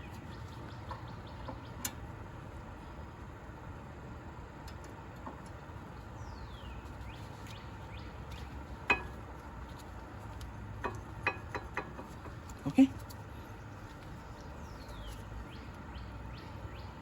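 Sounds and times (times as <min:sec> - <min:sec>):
steady low hum: 0:00.0 - 0:17.0
faint bird chirps: 0:12.6 - 0:17.0.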